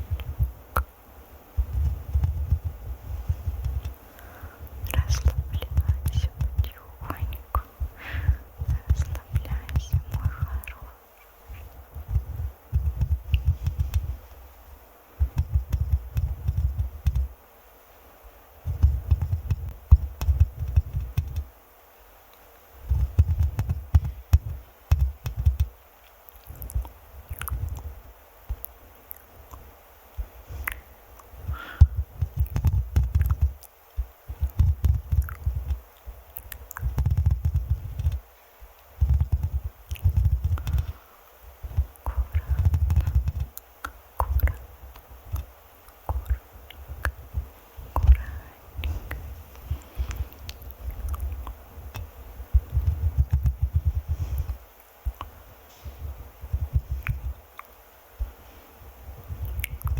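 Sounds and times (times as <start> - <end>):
fingers scratching on microphone: 1.6 - 4.0, 4.7 - 14.4, 15.2 - 17.3, 18.6 - 21.5, 22.8 - 25.7, 26.4 - 29.3, 31.5 - 35.8, 36.4 - 38.2, 39.0 - 41.0, 41.6 - 45.5, 46.1 - 54.6, 59.2 - 59.9.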